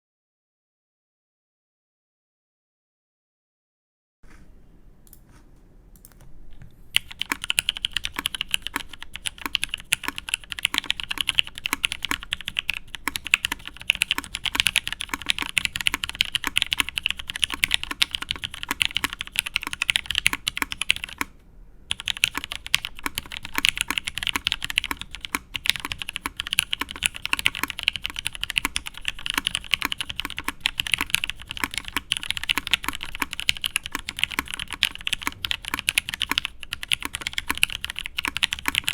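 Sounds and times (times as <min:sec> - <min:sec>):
mechanical keyboard typing: 0:06.9 - 0:21.3, 0:21.9 - 0:38.9.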